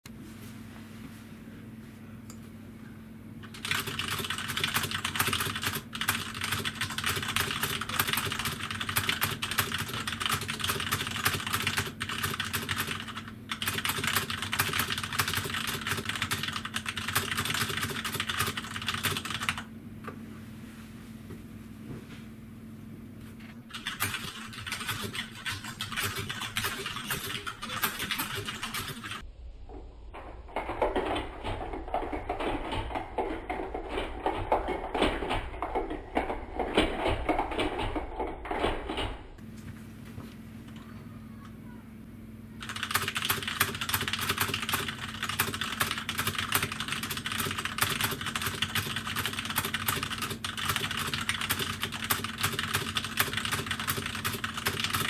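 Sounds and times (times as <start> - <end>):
rapid mechanical keyboard clicks: 3.4 - 19.7, 23.7 - 29.2, 30.5 - 39.2, 42.6 - 55.0.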